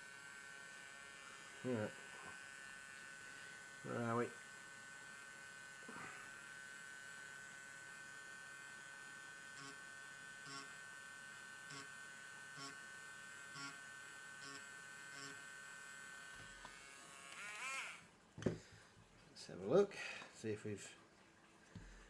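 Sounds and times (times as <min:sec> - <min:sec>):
electrical hum with high whine: 0:05.7 - 0:17.4.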